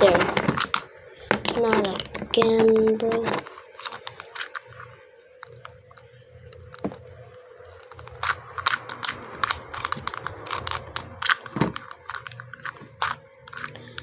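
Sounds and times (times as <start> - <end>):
plastic puzzle pieces clicking: 0.0 - 4.8, 7.7 - 14.0
faint steady hum: 0.0 - 14.0.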